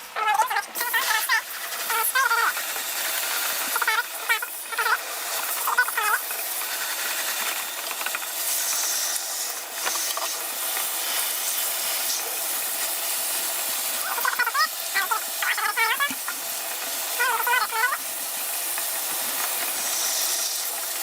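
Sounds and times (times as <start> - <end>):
steady hiss: 0.7 - 21.0.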